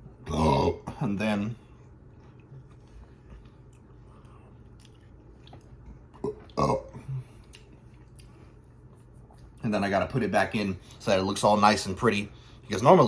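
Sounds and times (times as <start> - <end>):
man burping: 6.2 - 7.3.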